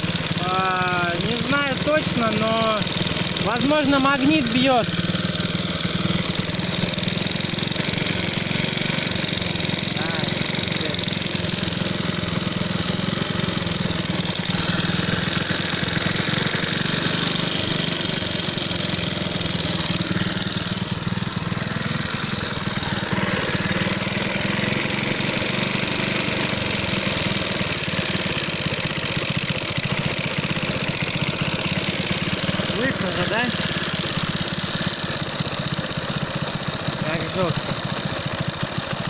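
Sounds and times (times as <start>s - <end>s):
moped engine knocking: 0.0s - 39.0s.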